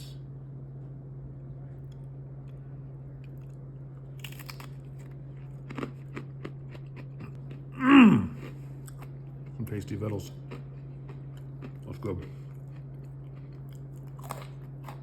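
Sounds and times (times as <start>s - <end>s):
person crunching food: 3.2s - 15.0s
person saying mmm: 7.8s - 8.6s.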